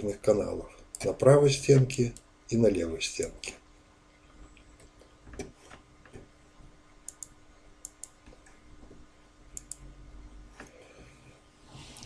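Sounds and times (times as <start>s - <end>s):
faint steady hum: 0.0s - 12.0s
faint sharp clicks: 7.1s - 8.6s, 9.6s - 9.9s.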